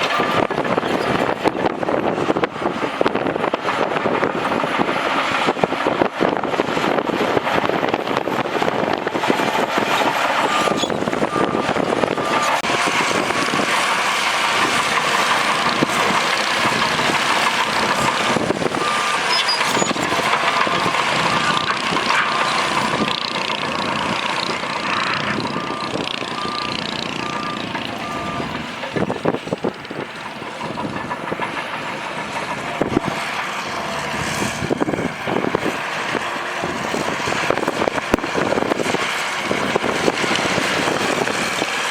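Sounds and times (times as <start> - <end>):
reversing alarm beeps: 0.0 - 1.2, 10.0 - 15.5, 16.8 - 21.5, 24.5 - 29.2
diesel engine running hard: 0.0 - 41.9
tracks clattering on rock: 13.3 - 41.9.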